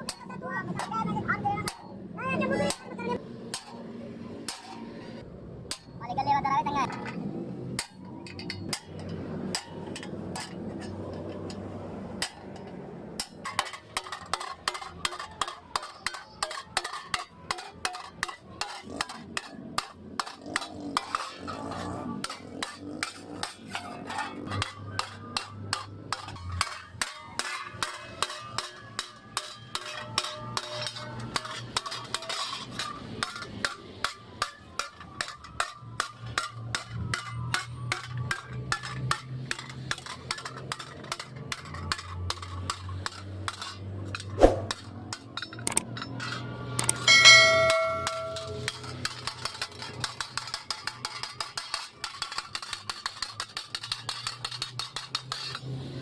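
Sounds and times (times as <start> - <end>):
hammer striking metal: 44.3 - 49.8.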